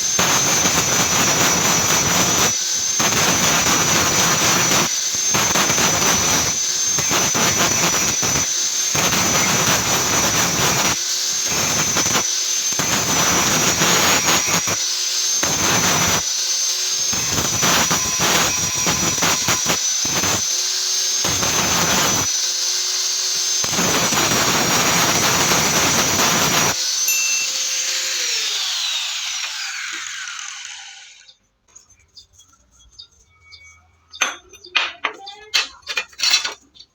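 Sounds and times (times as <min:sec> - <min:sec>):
angle grinder whining: 0:00.0 - 0:31.4
disc grinding steel: 0:00.0 - 0:31.4
grinder spinning down: 0:00.0 - 0:31.4.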